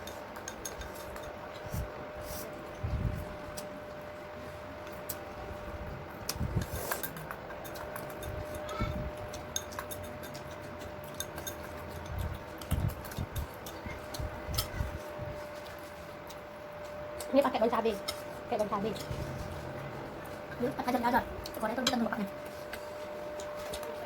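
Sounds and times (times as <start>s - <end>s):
cutlery clinking against dishes: 0.0s - 1.4s, 6.6s - 14.8s.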